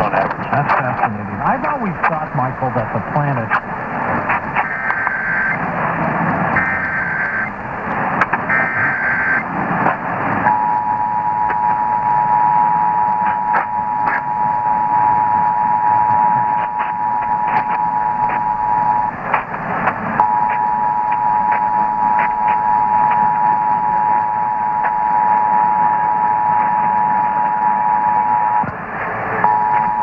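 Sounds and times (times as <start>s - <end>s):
data bursts: 0.0s - 24.9s
radio static: 0.0s - 25.0s
two-tone attention signal: 4.5s - 5.6s, 6.5s - 7.6s, 8.5s - 9.4s, 20.2s - 26.5s.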